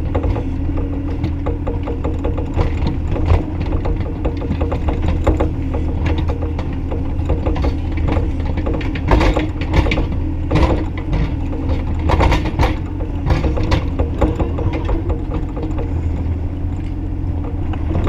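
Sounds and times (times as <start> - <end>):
excavator diesel engine running: 0.0 - 18.0
metallic clanks and rattles: 0.0 - 18.0.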